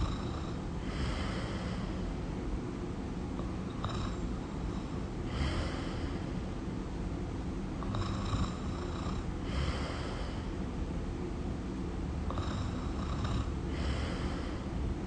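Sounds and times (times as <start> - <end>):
person snoring: 5.3 - 6.2, 7.8 - 10.4, 12.3 - 14.6.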